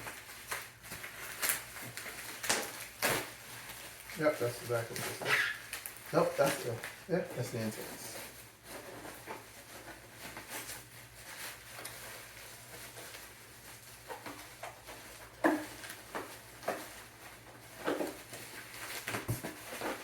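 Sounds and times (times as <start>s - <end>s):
plastic packaging rustling and crinkling: 0.0s - 20.0s.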